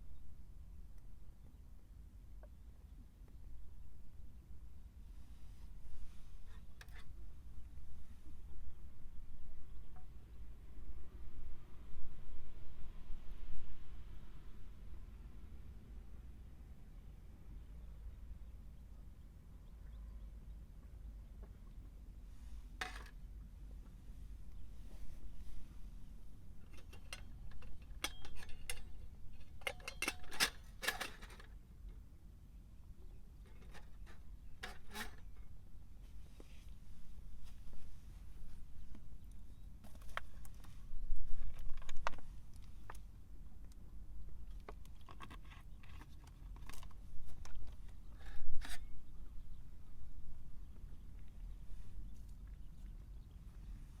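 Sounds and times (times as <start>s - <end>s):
camping gear clicks and scrapes: 5.6s - 7.2s, 22.4s - 23.3s, 24.5s - 31.6s, 33.4s - 36.8s, 39.5s - 43.1s, 44.5s - 49.5s.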